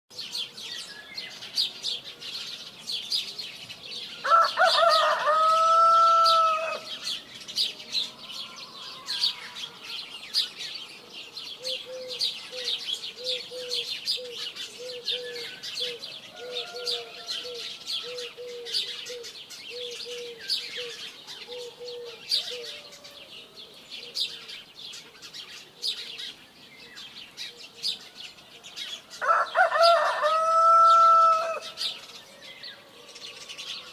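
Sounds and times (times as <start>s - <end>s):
small birds chirping: 0.1s - 33.9s
rooster crowing: 4.2s - 7.0s, 8.0s - 10.1s, 15.3s - 18.3s, 21.6s - 23.3s, 29.2s - 31.8s.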